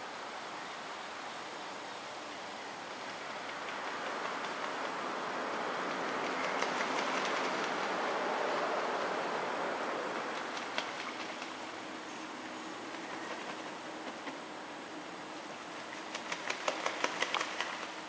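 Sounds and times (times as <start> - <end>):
high pulsing insect chorus: 0.0 - 18.0
vehicle passing by: 3.2 - 13.8.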